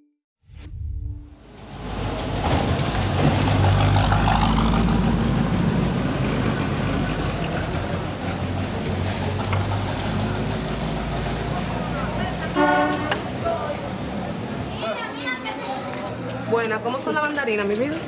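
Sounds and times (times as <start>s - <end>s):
street noise: 0.5s - 18.0s
vehicle engine running close by: 1.4s - 12.4s.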